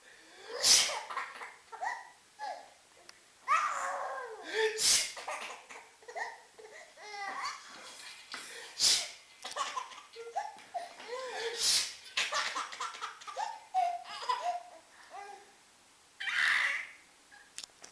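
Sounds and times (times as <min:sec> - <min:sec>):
sneezes: 0:00.5 - 0:01.3, 0:04.6 - 0:05.6, 0:08.8 - 0:09.2, 0:11.4 - 0:12.0
baby laughing: 0:00.9 - 0:02.7, 0:05.2 - 0:07.8, 0:09.4 - 0:11.2, 0:12.1 - 0:15.4.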